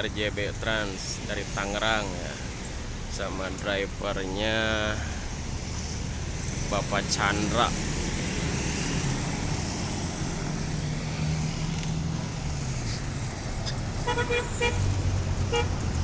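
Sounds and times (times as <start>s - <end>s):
bus engine humming: 0.0s - 16.0s
short horn toots: 14.0s - 14.9s.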